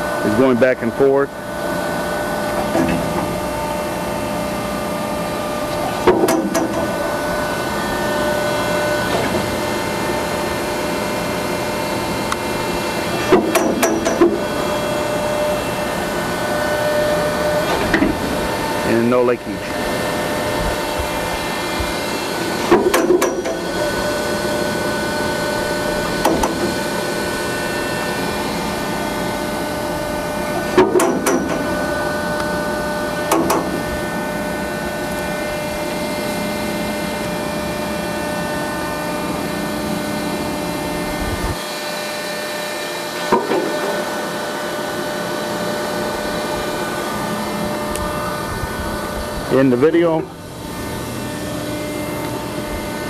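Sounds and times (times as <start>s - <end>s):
hydraulic unit humming and whining: 0.0s - 53.0s
sharp machine clunks: 2.5s - 3.3s, 5.9s - 7.1s, 13.2s - 14.6s, 22.6s - 23.8s, 26.2s - 26.9s, 30.6s - 31.8s, 33.2s - 33.9s.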